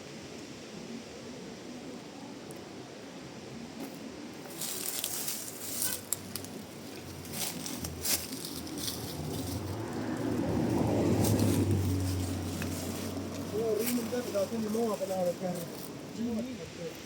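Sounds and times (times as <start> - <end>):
rustling and crackling: 3.8 - 17.0.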